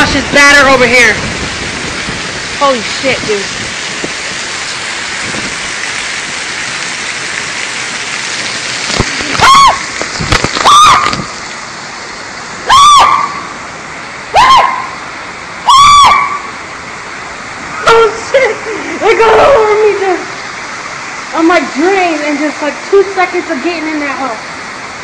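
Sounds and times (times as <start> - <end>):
heavy rain pouring: 0.0 - 25.0
loud high rising and falling cries: 14.3 - 15.0, 15.6 - 16.6.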